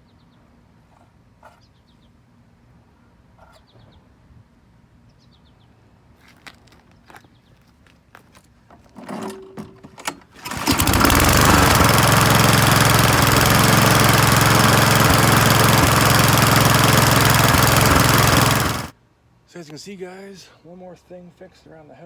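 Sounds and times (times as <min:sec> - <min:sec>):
lawnmower engine running: 0:09.1 - 0:18.9.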